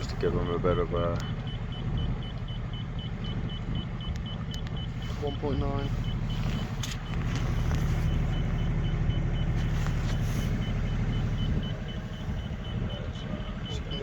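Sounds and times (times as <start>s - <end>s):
boat engine rumbling: 0.0s - 14.0s
fast high electronic beeping: 10.4s - 14.0s.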